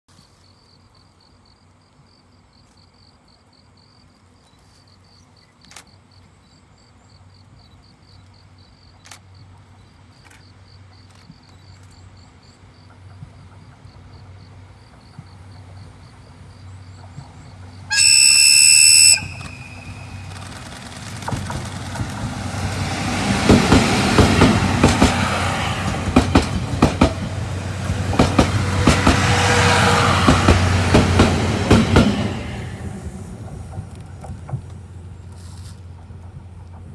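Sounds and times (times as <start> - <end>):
train rumble: 8.5 - 36.9
locomotive horn blast: 17.9 - 20.6, 28.6 - 30.8
wheels clattering over rail joints: 19.2 - 32.4.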